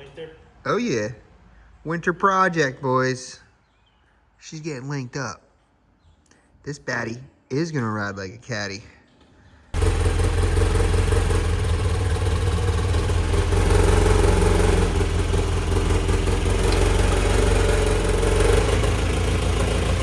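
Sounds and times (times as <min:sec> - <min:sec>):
truck engine idling: 0:09.8 - 0:20.0.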